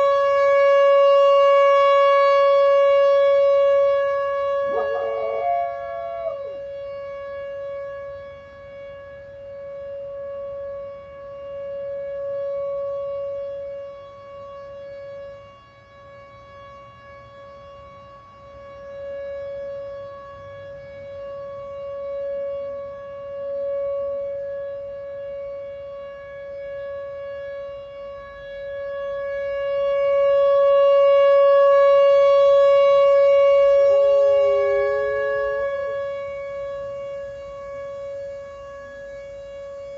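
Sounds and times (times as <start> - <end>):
warning siren: 0.0 - 39.9
dog howling: 4.6 - 6.5, 34.4 - 35.6.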